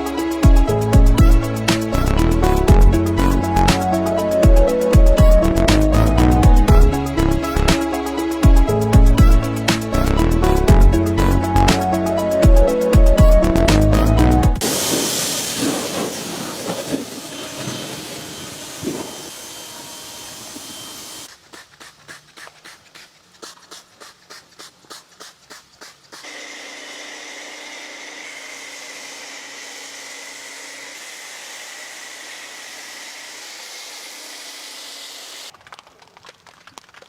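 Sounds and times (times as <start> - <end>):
rhythmic strokes: 0.0 - 14.6
pressure washer spraying: 14.6 - 27.0.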